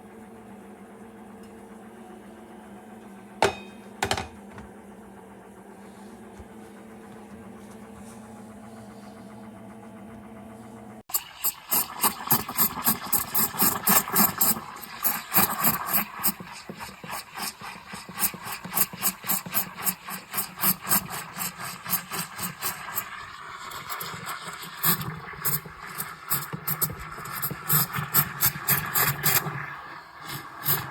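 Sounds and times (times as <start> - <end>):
espresso machine hissing and squealing: 11.1 - 30.9.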